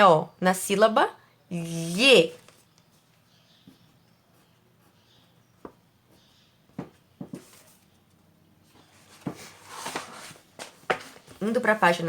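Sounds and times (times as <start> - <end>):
book page turning: 2.3 - 2.9, 9.0 - 11.4.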